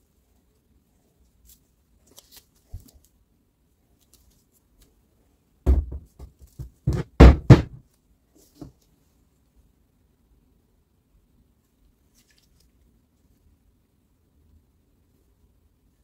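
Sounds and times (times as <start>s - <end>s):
hard objects knocking: 5.7s - 7.8s.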